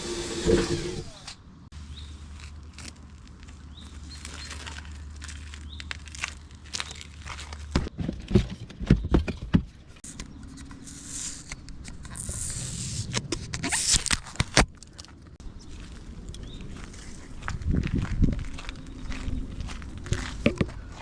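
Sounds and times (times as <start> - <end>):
knocks and scrapes: 7.6 - 15.0.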